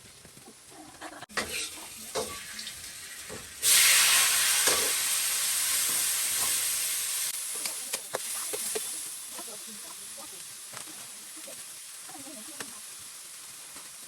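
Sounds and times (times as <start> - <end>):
food sizzling in hot oil: 0.0 - 14.0.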